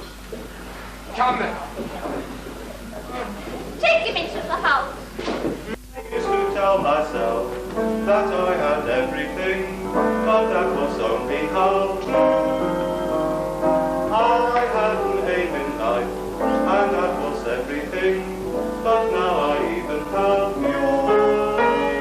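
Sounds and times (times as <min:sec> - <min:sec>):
man singing slow melody: 0:05.9 - 0:22.0.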